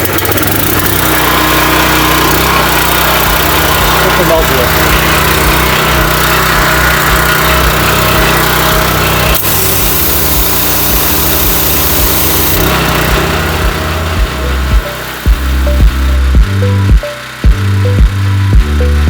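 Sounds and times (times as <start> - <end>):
petrol engine running at full throttle: 0.0 - 19.0
high hiss: 9.4 - 12.7.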